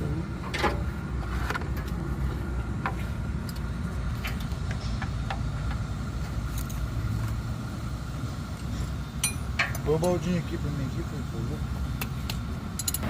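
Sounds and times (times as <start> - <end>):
steady low rumble: 0.0 - 13.0
metallic clicks of hand tools: 12.0 - 13.0.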